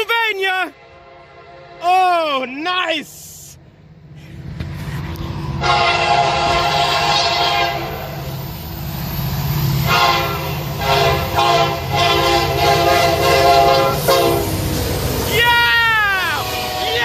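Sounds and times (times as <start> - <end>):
locomotive air horn blasts: 0.7 - 1.8, 5.6 - 8.1, 9.8 - 14.6, 16.4 - 17.0
low rumble of passing locomotive: 0.7 - 1.8, 3.6 - 17.0.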